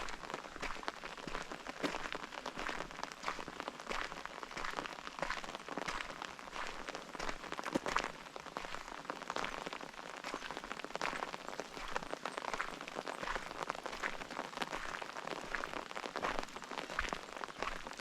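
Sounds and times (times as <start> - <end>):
rain falling: 0.0 - 18.0.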